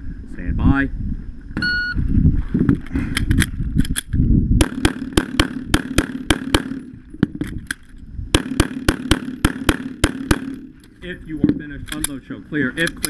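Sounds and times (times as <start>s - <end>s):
pistol shots: 4.6s - 6.9s, 8.3s - 10.7s.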